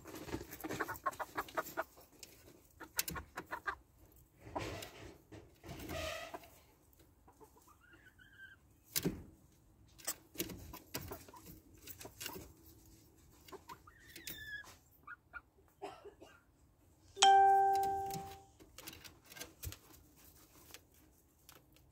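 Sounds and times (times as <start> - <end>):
hens clucking: 0.1 - 5.0, 6.2 - 8.8, 13.2 - 15.8.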